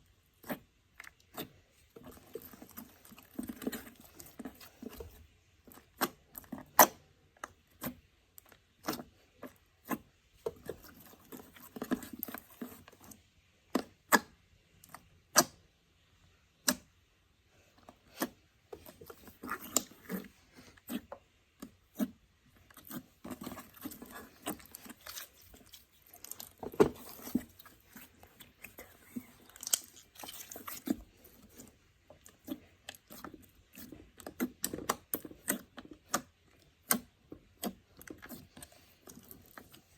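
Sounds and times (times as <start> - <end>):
slime squelching: 0.0 - 15.7, 16.5 - 39.9.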